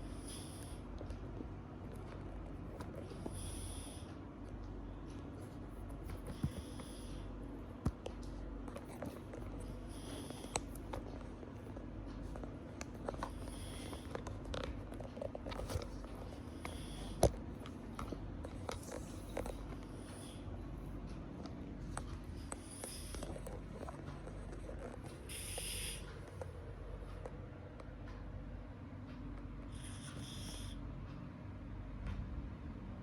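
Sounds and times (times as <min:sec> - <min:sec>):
cat snoring: 0:00.0 - 0:00.9, 0:03.0 - 0:04.1, 0:05.9 - 0:07.6, 0:08.9 - 0:11.4, 0:12.2 - 0:17.4, 0:22.2 - 0:26.3, 0:29.7 - 0:30.8.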